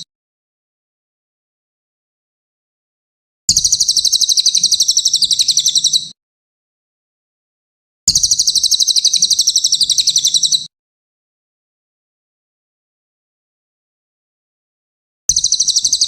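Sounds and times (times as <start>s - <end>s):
songbird high-pitched trills: 3.5s - 6.2s, 8.1s - 10.7s, 15.3s - 16.0s.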